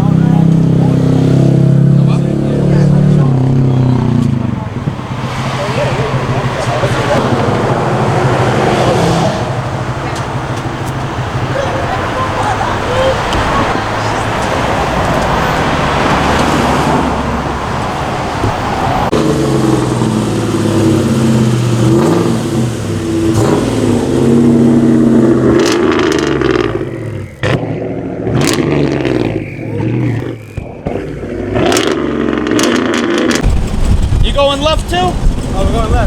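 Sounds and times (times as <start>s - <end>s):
car engine revving: 0.0s - 36.0s
rushing noise: 32.8s - 36.0s.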